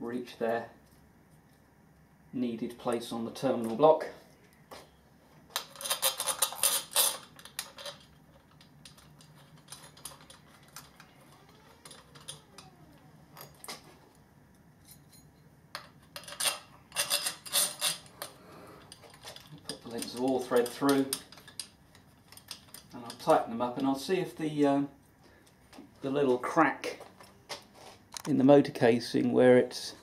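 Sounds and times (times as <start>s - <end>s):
metal parts and tools clinking: 5.5s - 13.9s, 14.8s - 24.1s.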